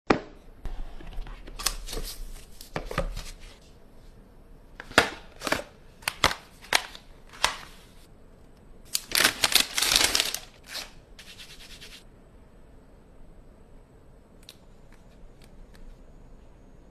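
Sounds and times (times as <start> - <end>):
packaging rustling and scraping: 8.9 - 11.0.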